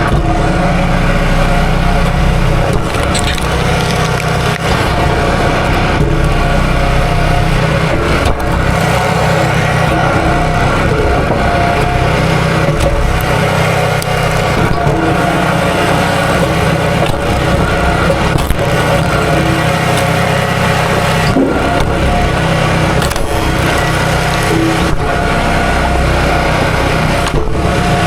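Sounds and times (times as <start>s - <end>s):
small gasoline engine running: 0.0s - 28.0s.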